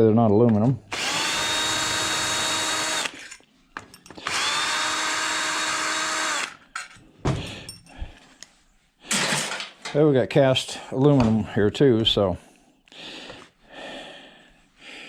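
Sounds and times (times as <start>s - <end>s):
cordless drill running: 0.9s - 3.3s, 4.2s - 6.7s.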